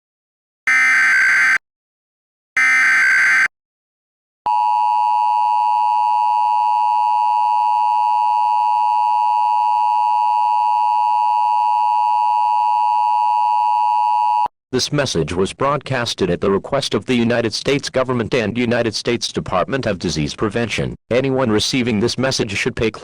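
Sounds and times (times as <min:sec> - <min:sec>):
two-tone alarm: 0:00.7 - 0:01.6, 0:02.6 - 0:03.5, 0:04.5 - 0:14.5.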